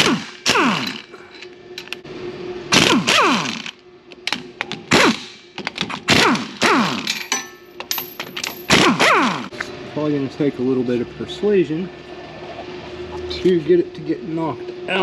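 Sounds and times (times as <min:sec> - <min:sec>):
metal knocks with ringing: 0:07.2 - 0:08.7.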